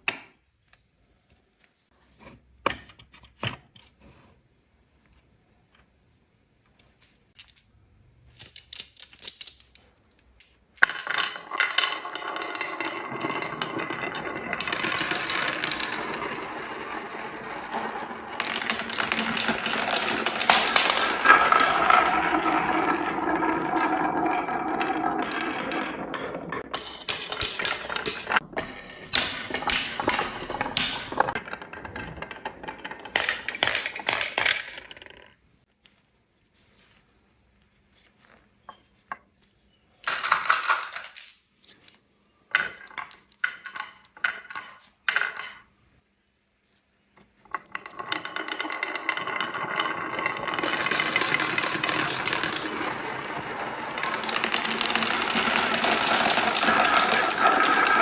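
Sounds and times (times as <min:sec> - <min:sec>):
marbles rolling on wooden track: 0:10.8 - 0:35.4, 0:40.0 - 0:41.4, 0:42.5 - 0:45.7, 0:47.4 - 0:58.0.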